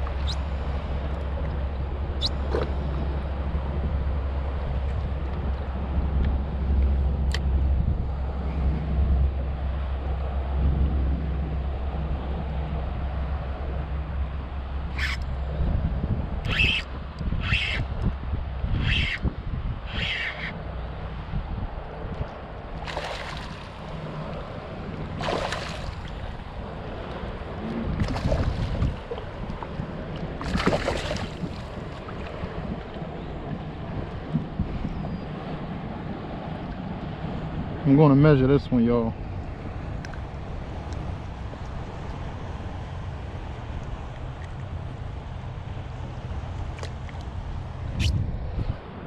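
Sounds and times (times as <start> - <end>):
wind buffeting microphone: 0.0 - 49.0
water washing against hull: 21.8 - 34.9.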